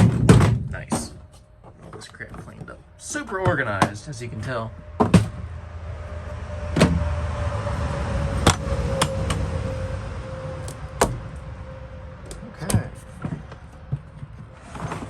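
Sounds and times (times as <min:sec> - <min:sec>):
low rumble: 0:03.6 - 0:14.7
tools clicking and clunking: 0:08.4 - 0:09.4, 0:12.2 - 0:15.0.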